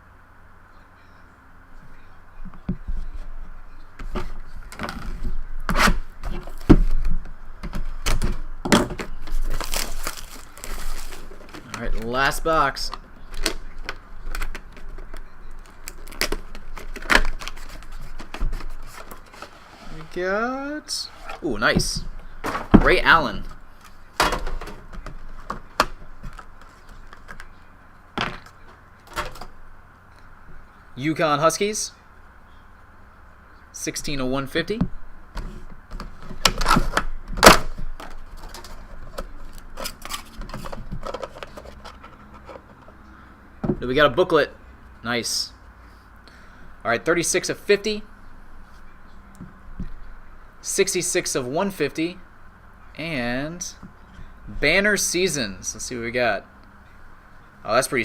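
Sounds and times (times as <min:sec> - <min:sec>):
cardboard boxes handled and opened: 0:07.7 - 0:12.2.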